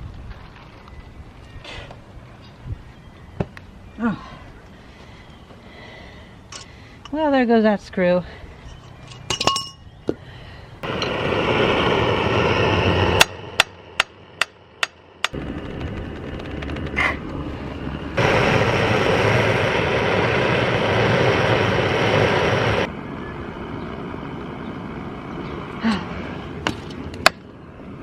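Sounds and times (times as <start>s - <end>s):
torch flame hissing: 10.8s - 13.6s, 15.3s - 22.9s.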